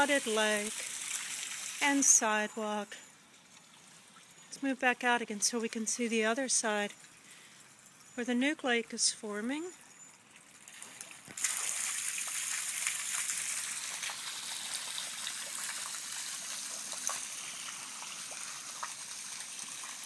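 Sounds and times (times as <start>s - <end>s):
water gushing with splashes: 0.0s - 2.4s, 10.4s - 20.0s.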